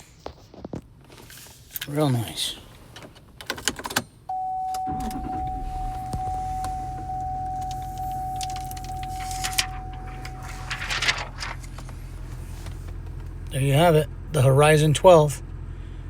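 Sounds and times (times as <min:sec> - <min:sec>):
high electronic tone: 0:04.3 - 0:10.8
diesel engine idling: 0:04.3 - 0:16.0.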